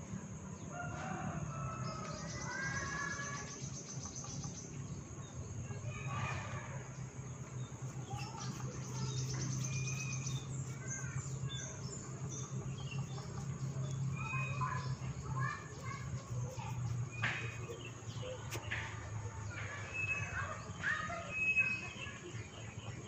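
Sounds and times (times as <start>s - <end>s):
insects trilling: 1.1s - 22.4s
birds chirping: 1.1s - 23.0s
steady low hum: 6.8s - 20.8s.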